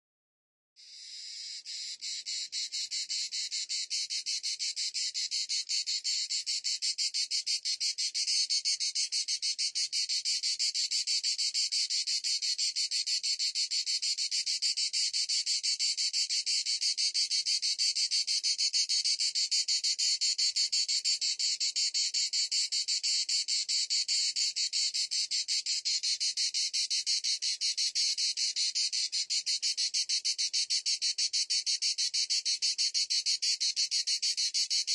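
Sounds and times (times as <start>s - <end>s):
cicadas buzzing: 0.8s - 13.0s, 24.0s - 34.9s.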